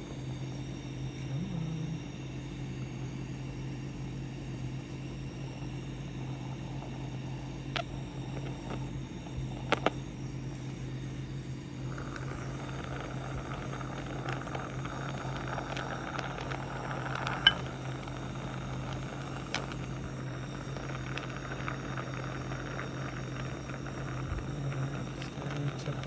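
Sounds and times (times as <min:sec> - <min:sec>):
torch flame hissing roar: 0:00.0 - 0:04.5, 0:05.4 - 0:26.0.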